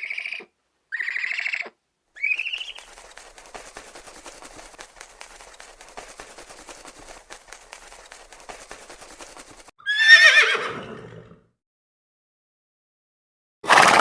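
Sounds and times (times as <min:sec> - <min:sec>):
horse whinnying: 0:09.8 - 0:11.4.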